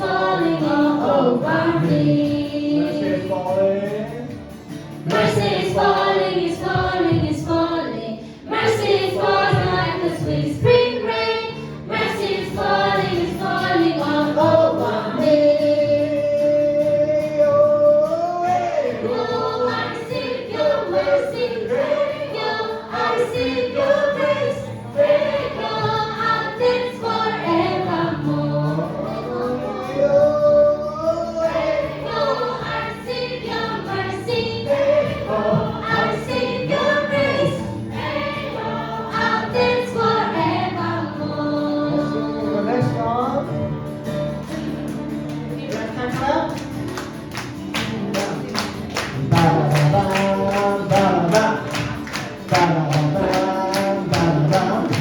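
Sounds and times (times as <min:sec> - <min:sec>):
group singing a worship song: 0:00.0 - 0:43.2, 0:47.0 - 0:55.0
hand claps: 0:05.0 - 0:06.2, 0:44.4 - 0:55.0.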